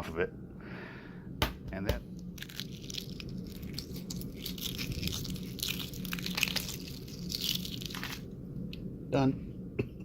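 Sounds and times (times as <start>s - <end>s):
eggshell crackling: 2.2s - 8.8s.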